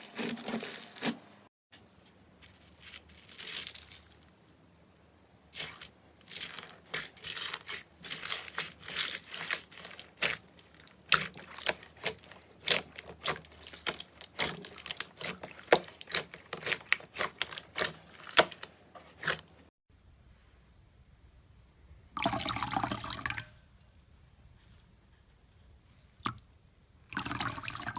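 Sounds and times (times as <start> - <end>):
slime crackling and popping: 5.6 - 19.4.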